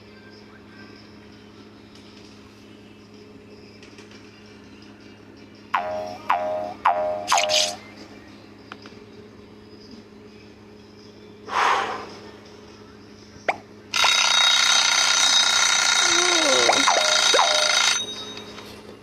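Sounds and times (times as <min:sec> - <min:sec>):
short breathy rush: 0:11.5 - 0:12.3
alarm clock ringing: 0:14.0 - 0:18.7.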